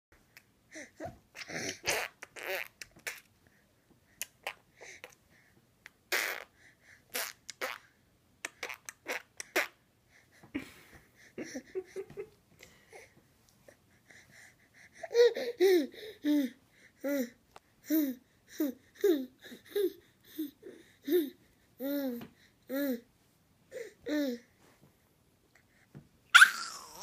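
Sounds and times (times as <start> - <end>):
baby making mouth noises: 1.3 - 3.3, 7.1 - 9.8.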